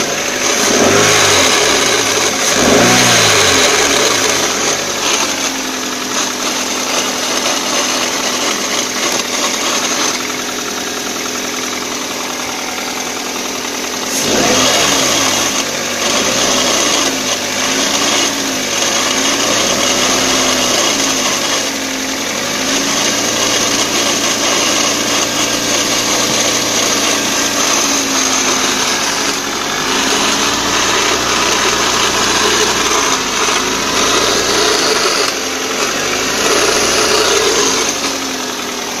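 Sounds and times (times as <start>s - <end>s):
car engine idling: 0.0s - 39.0s.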